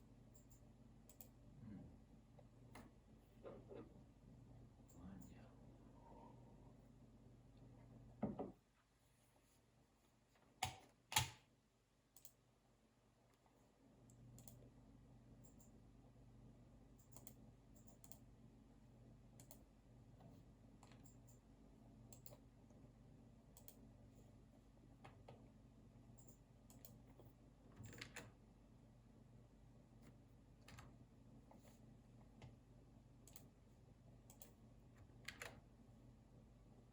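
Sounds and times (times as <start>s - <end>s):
low room hum: 0.0s - 36.9s
keyboard and mouse clicks: 0.4s - 1.4s, 10.6s - 11.4s, 14.1s - 14.6s, 17.0s - 18.2s, 22.1s - 22.4s, 23.6s - 23.8s, 26.2s - 28.4s, 33.2s - 33.5s, 34.3s - 35.6s.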